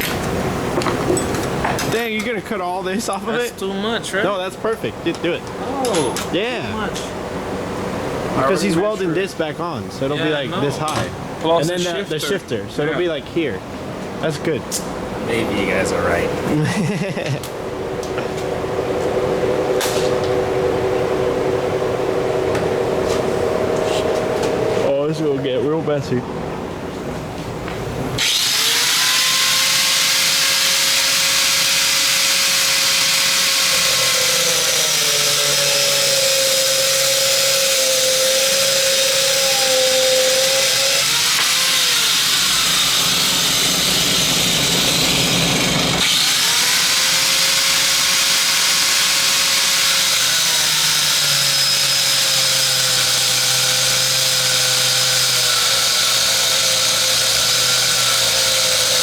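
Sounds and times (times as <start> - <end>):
angle grinder cutting metal: 28.2 - 59.0.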